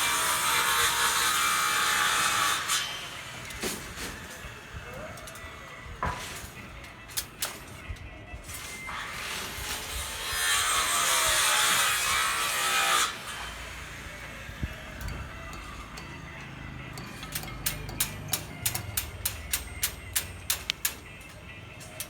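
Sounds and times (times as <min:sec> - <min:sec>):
power tool cutting: 0:00.0 - 0:04.8, 0:08.7 - 0:21.2
sharp evenly spaced taps: 0:17.0 - 0:21.1.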